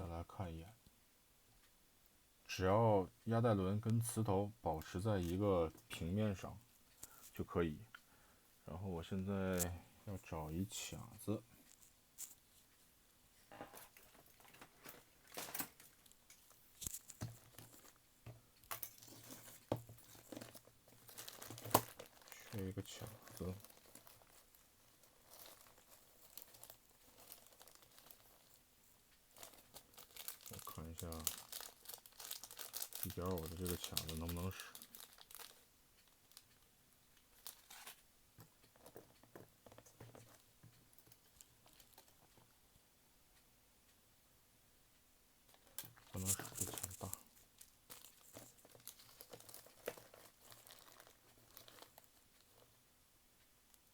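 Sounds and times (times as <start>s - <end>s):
small parts rustling and clicking: 11.6s - 12.8s, 13.4s - 42.6s, 45.5s - 52.8s.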